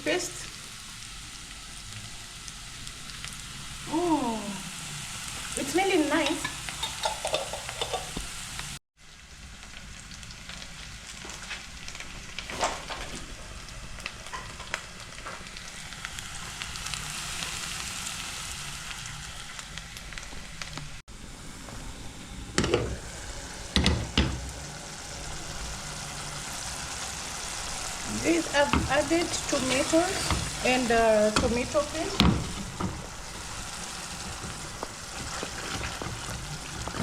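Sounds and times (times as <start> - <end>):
onions sizzling in oil: 0.0 - 37.0
spoon knocking pot: 6.2 - 8.2.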